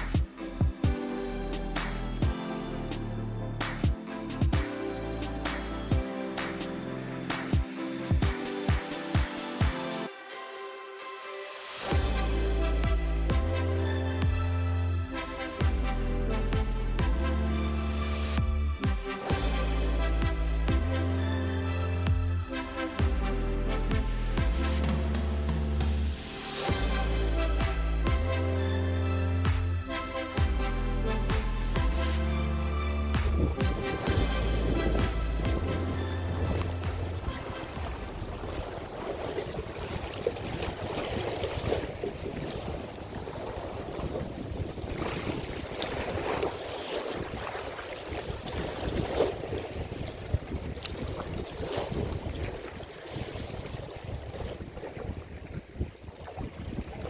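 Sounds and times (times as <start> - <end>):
electronic music with drum beat: 0.0 - 10.1, 11.0 - 17.8, 18.4 - 21.4, 22.1 - 38.4
waves sloshing against shore: 3.6 - 15.9, 31.3 - 57.0
wind buffeting microphone: 33.2 - 57.0.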